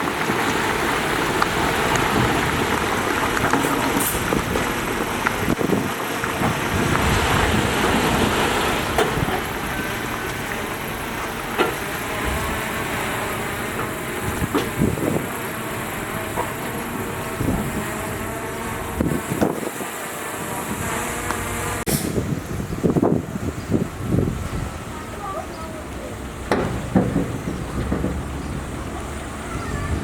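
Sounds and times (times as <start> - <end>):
diesel construction machinery running: 0.0 - 30.0
sharp knocks: 26.5 - 28.6.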